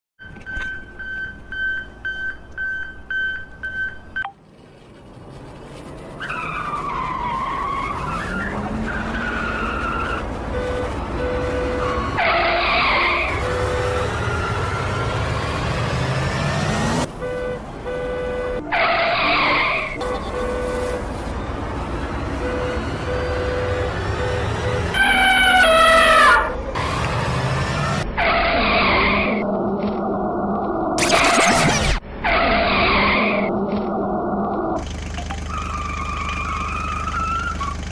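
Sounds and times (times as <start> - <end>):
high electronic beeps: 31.0 - 32.0.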